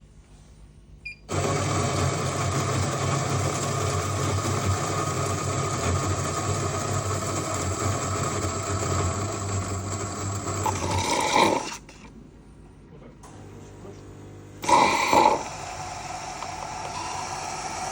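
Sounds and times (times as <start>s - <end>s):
coffee machine buzzing: 1.3s - 12.1s, 13.2s - 17.9s.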